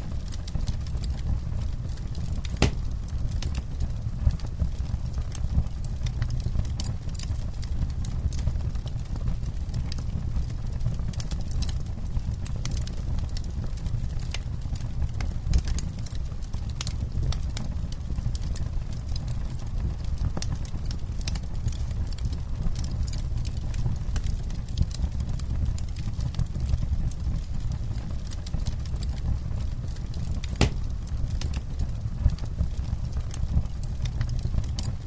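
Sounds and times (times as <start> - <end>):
low steady rumble: 0.0 - 9.8, 19.6 - 35.0
campfire crackling: 0.0 - 35.0.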